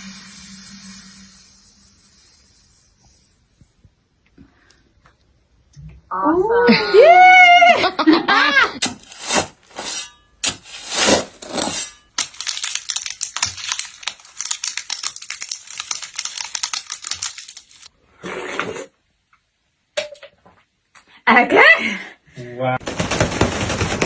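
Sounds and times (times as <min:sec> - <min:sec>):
rapid crackles: 0:12.1 - 0:17.9, 0:22.8 - 0:24.0
props rustling: 0:22.8 - 0:24.0.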